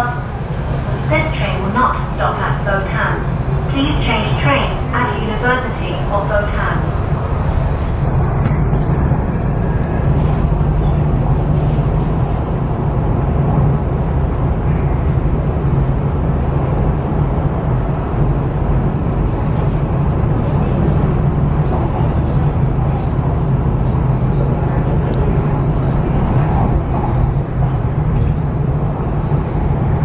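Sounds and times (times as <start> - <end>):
train wheels rumbling on track: 0.0 - 30.0.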